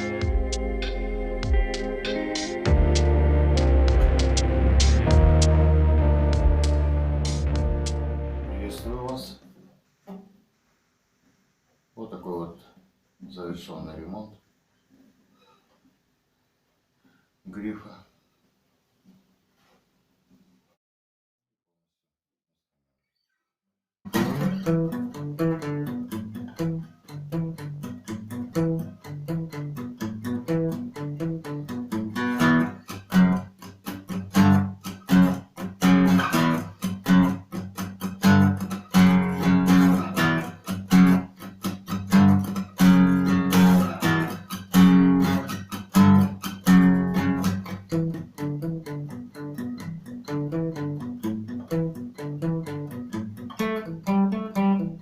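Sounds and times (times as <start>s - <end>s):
acoustic guitar playing: 0.0s - 9.4s, 24.1s - 55.0s.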